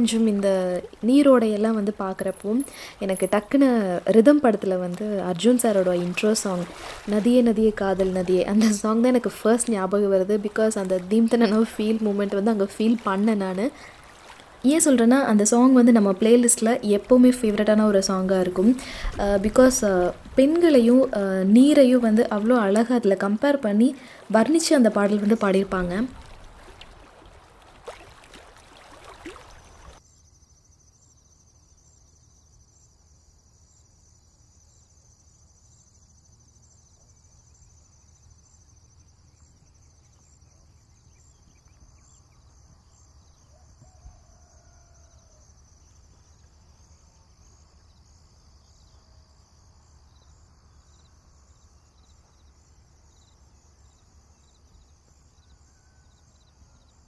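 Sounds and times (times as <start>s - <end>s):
running stream water: 0.0s - 30.0s
insects chirring: 0.0s - 57.0s.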